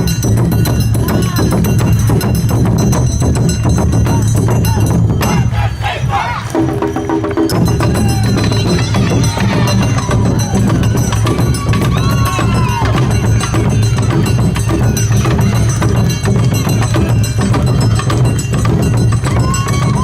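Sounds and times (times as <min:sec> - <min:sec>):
taiko drums beating: 0:00.0 - 0:20.0
hand gong clanging: 0:06.5 - 0:20.0.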